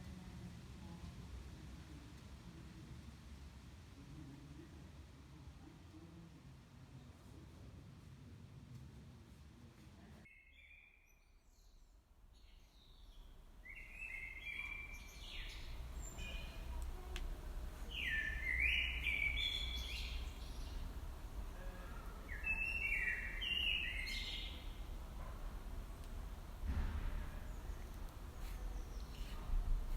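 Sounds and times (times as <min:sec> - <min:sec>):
songbird singing: 0:10.2 - 0:25.0, 0:27.4 - 0:29.9.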